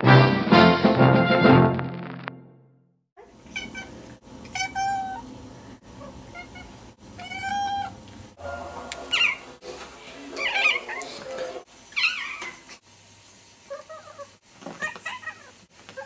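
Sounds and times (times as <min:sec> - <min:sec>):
brass band music: 0:00.0 - 0:02.5
cat meowing: 0:03.5 - 0:05.2, 0:06.0 - 0:08.0.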